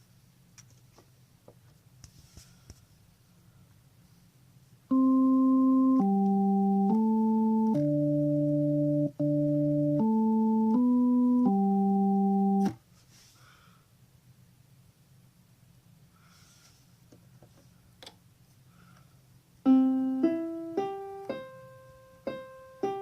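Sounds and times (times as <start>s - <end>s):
electronic keyboard tune: 4.9s - 12.8s, 19.6s - 23.0s.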